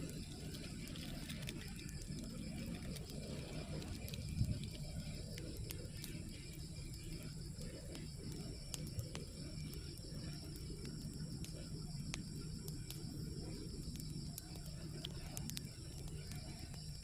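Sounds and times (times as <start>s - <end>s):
insects chirping: 0.0s - 17.0s
light ticks and drips: 0.0s - 17.0s.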